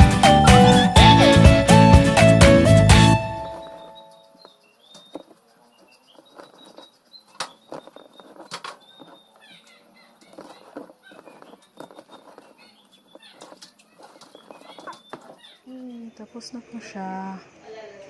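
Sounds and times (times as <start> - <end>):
faint high chirps: 3.3 - 16.5
pops and crackles of frying: 4.4 - 15.5.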